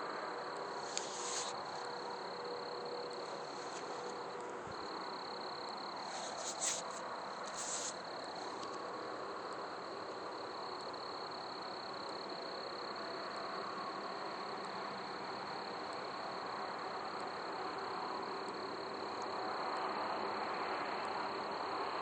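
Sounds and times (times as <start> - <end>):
high insect trill: 0.0 - 21.7
hissy crackles: 0.8 - 1.9, 6.0 - 8.7.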